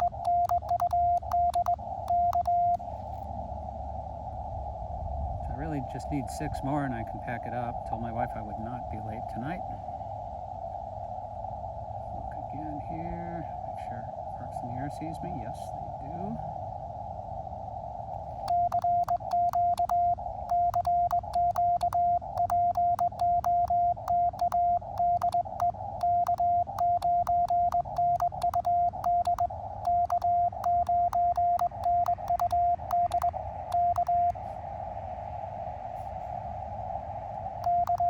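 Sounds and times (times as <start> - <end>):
key clicks: 0.0 - 2.5, 18.5 - 19.9, 20.5 - 34.3
morse code tone: 0.0 - 2.8, 18.4 - 34.3, 37.6 - 38.0
radio band hiss: 5.4 - 9.9, 12.1 - 16.6.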